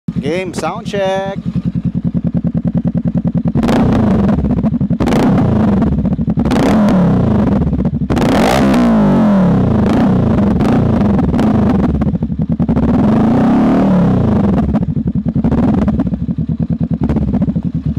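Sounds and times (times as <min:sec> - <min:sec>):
motorcycle engine idling and revving: 0:00.1 - 0:17.9.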